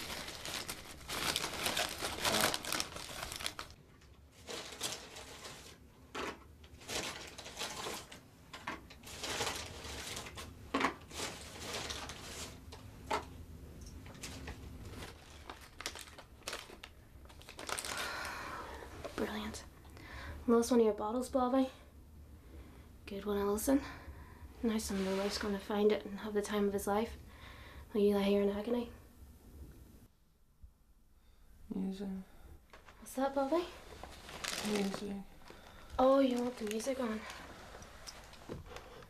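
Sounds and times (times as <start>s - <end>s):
bag crinkling and rustling: 0.0s - 8.2s, 9.0s - 12.8s, 14.0s - 18.3s, 32.8s - 39.0s.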